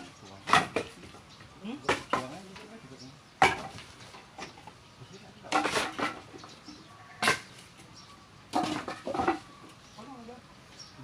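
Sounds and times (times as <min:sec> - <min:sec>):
wooden boards knocking: 0:00.4 - 0:01.2, 0:03.4 - 0:04.6, 0:08.5 - 0:09.5.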